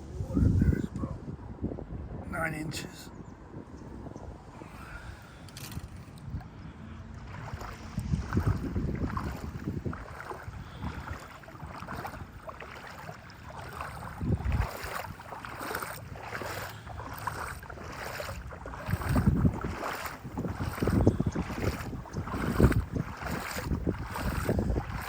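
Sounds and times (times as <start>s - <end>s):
gusty wind buffeting microphone: 0.0s - 25.0s
water sloshing: 5.4s - 25.0s.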